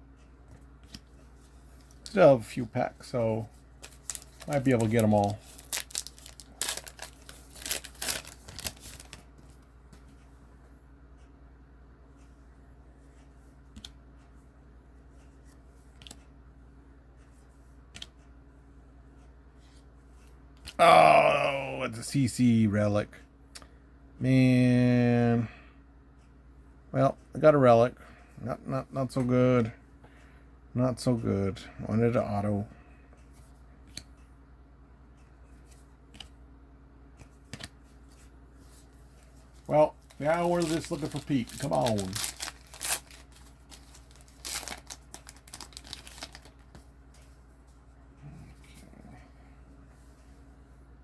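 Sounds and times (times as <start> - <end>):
faint low hum: 0.0 - 51.0
soft clicks of cards flipped: 37.2 - 38.3.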